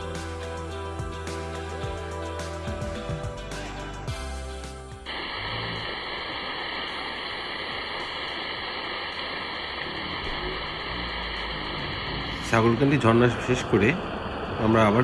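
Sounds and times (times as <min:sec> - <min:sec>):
background music: 0:00.0 - 0:06.0
waterfall rushing: 0:05.0 - 0:15.0.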